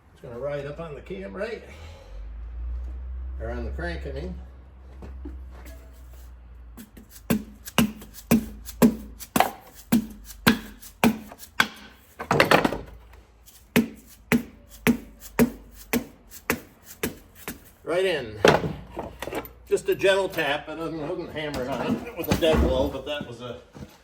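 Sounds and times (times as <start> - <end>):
hammer tapping piston: 6.8 - 12.1, 13.5 - 17.7.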